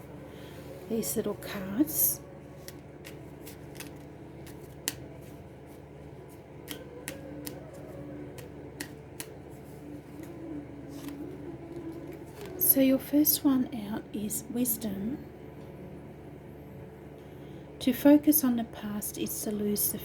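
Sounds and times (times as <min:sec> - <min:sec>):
faint steady hum: 0:00.0 - 0:20.0
cards being shuffled: 0:02.5 - 0:12.7.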